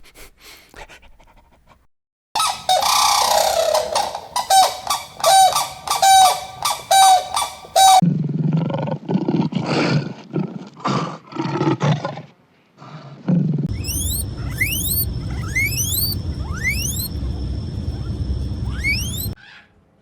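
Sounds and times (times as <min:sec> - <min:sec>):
bird honking calls: 0:02.4 - 0:08.0, 0:13.7 - 0:19.4.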